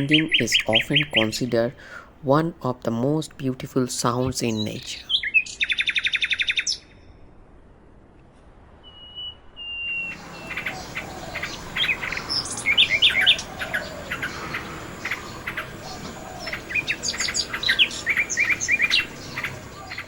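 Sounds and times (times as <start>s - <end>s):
nightingale singing: 0.0s - 7.0s, 8.9s - 20.0s.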